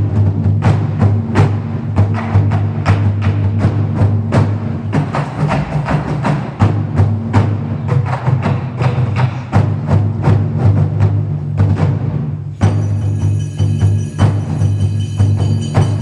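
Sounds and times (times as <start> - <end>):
drum and percussion strikes: 0.0 - 16.0.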